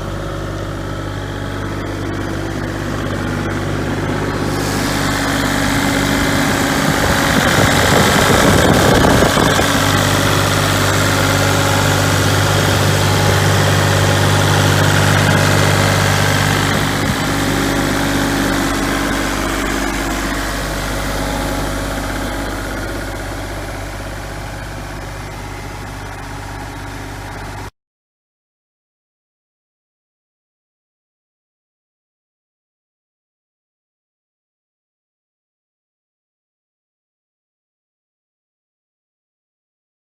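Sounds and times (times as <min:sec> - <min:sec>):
excavator diesel engine running: 0:00.0 - 0:27.7.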